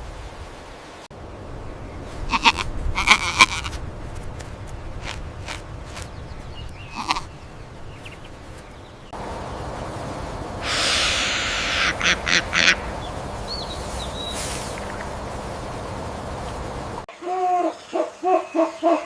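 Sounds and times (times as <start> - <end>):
outdoor background: 0.0 - 19.0
sharp animal calls: 2.3 - 3.8, 6.8 - 7.4, 10.5 - 15.3
rush of noise: 9.2 - 17.0.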